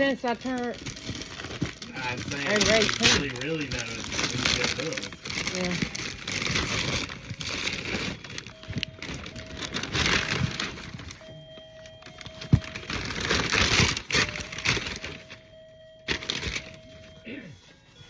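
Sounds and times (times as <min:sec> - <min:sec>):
packaging crackling and rustling: 0:00.0 - 0:17.2.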